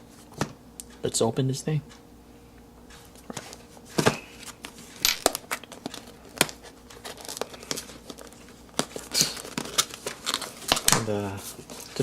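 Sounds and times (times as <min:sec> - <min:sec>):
packaging crinkling and tearing: 0:05.2 - 0:12.0.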